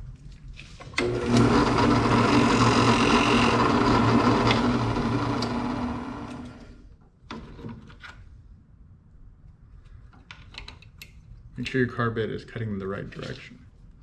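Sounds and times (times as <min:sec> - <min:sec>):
drill press humming: 0:01.0 - 0:06.8.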